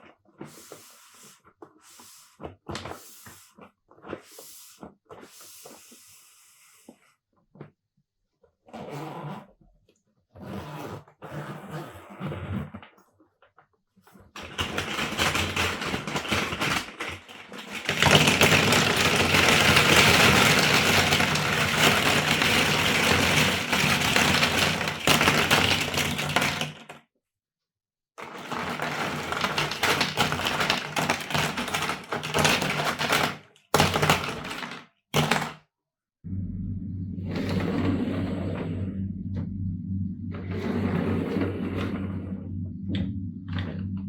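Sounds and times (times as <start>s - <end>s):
plastic toy blocks clattering: 14.4s - 27.0s, 28.2s - 35.6s
low hum: 36.3s - 44.0s.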